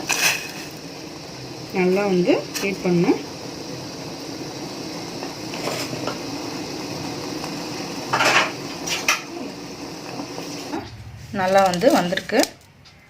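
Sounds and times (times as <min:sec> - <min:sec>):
metal utensil scraping a pan: 0:00.0 - 0:00.7.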